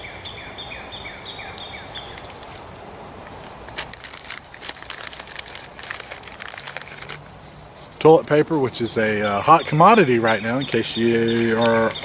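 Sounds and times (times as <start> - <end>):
bird chirping: 0.0 - 2.3, 8.1 - 12.0
plastic wrappers crinkling: 3.3 - 8.3, 11.0 - 12.0.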